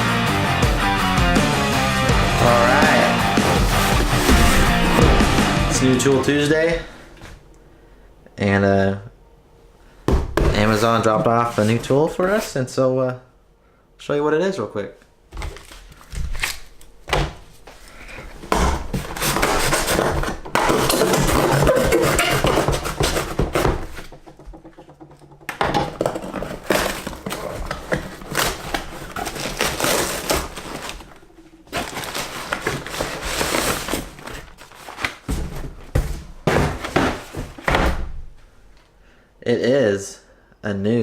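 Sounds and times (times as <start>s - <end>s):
knocks and thunks of contents: 3.6s - 5.4s, 10.1s - 10.9s, 17.0s - 17.4s, 18.4s - 38.3s
packaging tearing and rustling: 15.5s - 17.0s, 19.0s - 24.1s, 26.0s - 35.8s.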